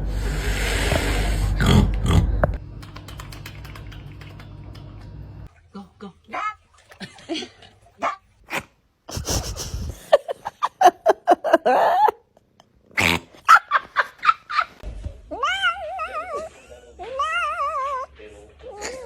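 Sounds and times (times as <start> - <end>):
cat yowling: 15.3 - 18.1.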